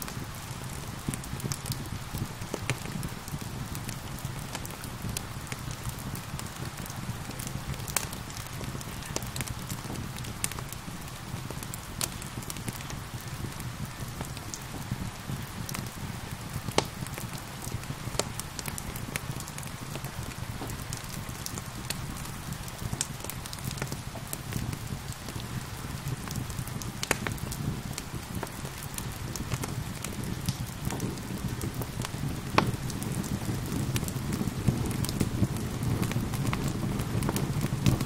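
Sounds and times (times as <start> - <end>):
rain hissing: 0.0 - 38.0
wood fire crackling and popping: 0.0 - 38.0.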